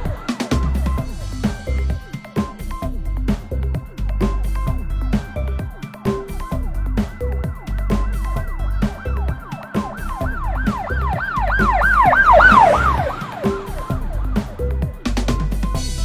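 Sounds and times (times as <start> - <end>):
kick drum beat: 0.0 - 16.0
swooping siren-like synth: 8.4 - 14.8.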